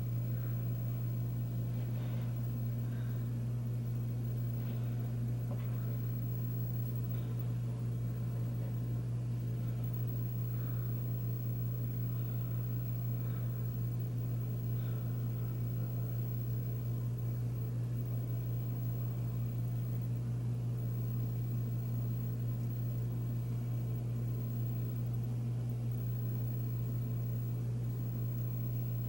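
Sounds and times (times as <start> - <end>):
ceiling fan motor humming: 0.0 - 29.0.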